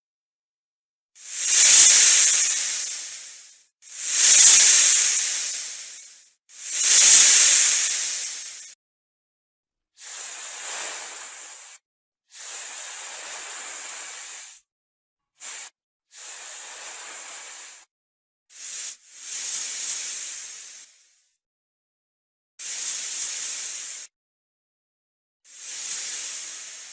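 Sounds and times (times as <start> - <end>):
snake hissing: 1.2 - 8.8, 10.0 - 11.8, 12.4 - 14.6, 15.4 - 17.9, 18.6 - 21.1, 22.6 - 24.1, 25.5 - 26.9.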